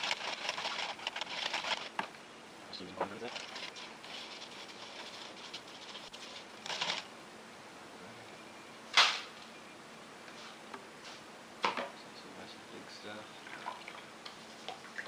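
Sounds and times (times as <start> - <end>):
gravel rattling in a sieve: 0.0 - 2.0.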